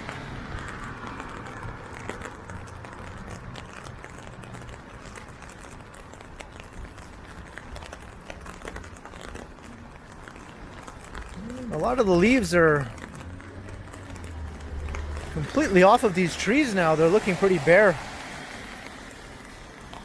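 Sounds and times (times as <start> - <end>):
low rumble of city traffic: 0.0 - 20.0
rain: 0.0 - 20.0
raindrops ticking on an umbrella: 0.0 - 20.0.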